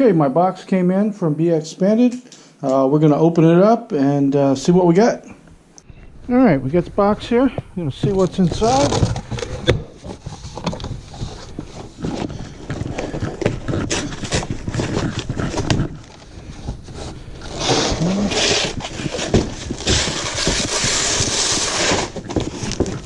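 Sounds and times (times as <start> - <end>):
scraping and rustling: 6.7 - 23.0
cardboard box being unpacked: 8.0 - 23.0.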